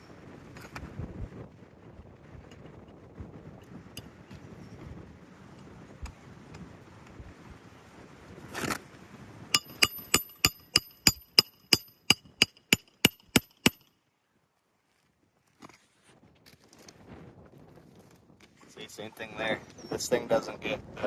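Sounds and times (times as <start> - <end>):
hammer striking metal: 9.6 - 13.9
scrape or rustle: 14.8 - 17.1.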